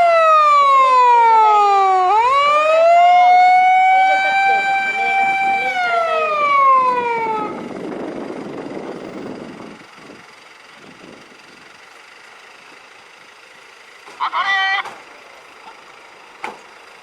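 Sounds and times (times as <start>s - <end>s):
fire engine siren wailing: 0.0s - 10.2s, 14.1s - 16.2s
vehicle rumble: 0.0s - 17.0s.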